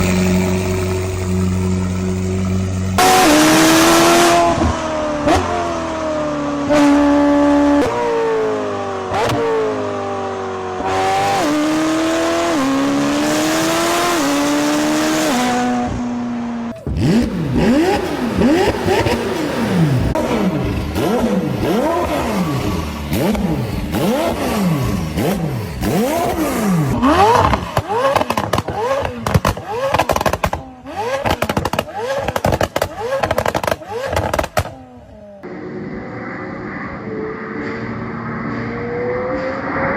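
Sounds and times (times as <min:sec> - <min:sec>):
car engine revving: 0:00.0 - 0:39.9
exhaust pops and crackles: 0:24.8 - 0:34.9.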